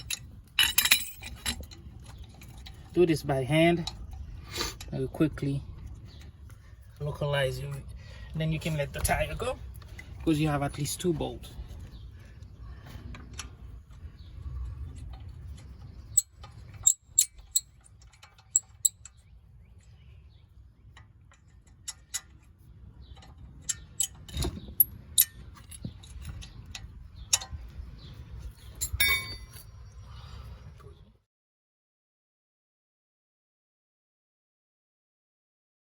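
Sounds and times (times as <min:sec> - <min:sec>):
ringing metal clink: 0:00.0 - 0:01.7, 0:28.8 - 0:29.7
metallic clinks of wrench and nuts: 0:00.0 - 0:03.0, 0:16.2 - 0:19.2, 0:23.1 - 0:27.6, 0:28.7 - 0:29.7.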